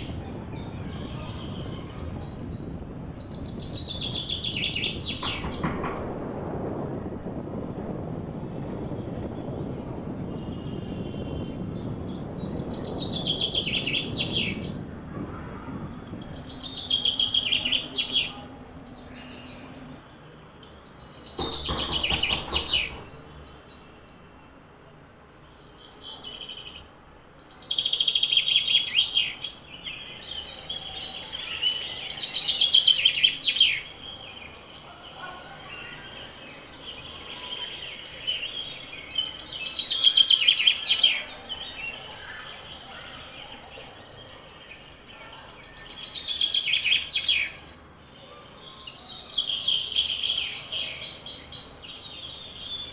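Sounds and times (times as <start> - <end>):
songbird singing: 0.0 - 52.9.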